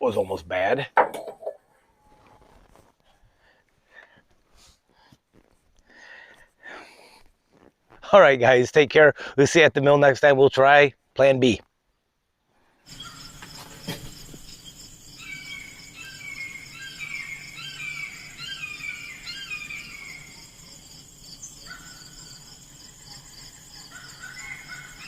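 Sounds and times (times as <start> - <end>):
bird chirping: 12.9 - 25.0
insects trilling: 12.9 - 25.0.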